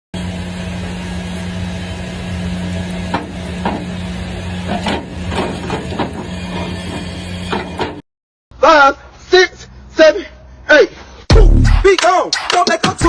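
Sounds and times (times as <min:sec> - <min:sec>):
machine hum: 0:00.2 - 0:08.0.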